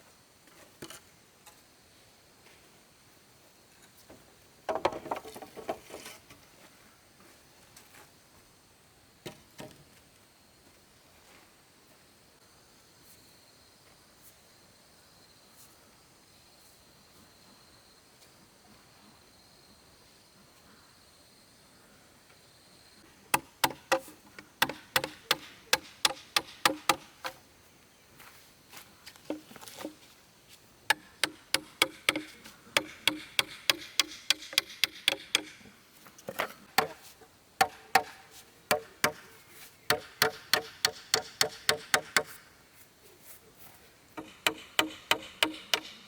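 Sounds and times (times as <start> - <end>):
hammer striking nails into wood: 23.4 - 27.4, 30.9 - 35.6, 36.8 - 37.0, 37.6 - 39.3, 39.9 - 42.4, 44.2 - 46.0.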